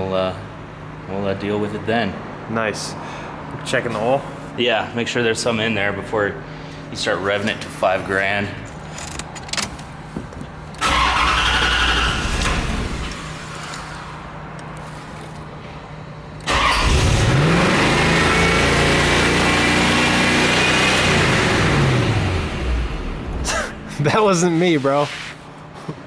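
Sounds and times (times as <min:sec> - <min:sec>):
car starter cranking: 0:08.7 - 0:14.8, 0:16.4 - 0:18.0
car engine revving: 0:10.8 - 0:14.2, 0:16.4 - 0:24.0.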